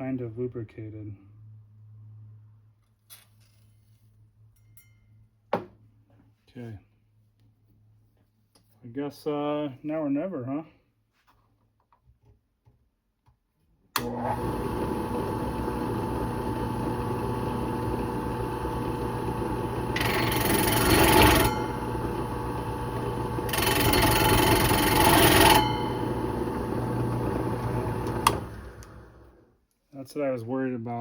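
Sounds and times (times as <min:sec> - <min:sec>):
electric drill running: 0:14.0 - 0:29.4.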